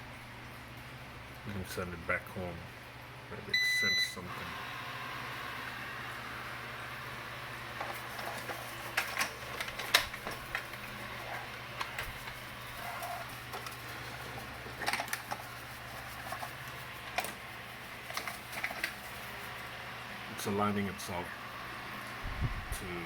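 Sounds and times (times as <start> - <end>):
robot vacuum whirring: 4.5 - 20.0.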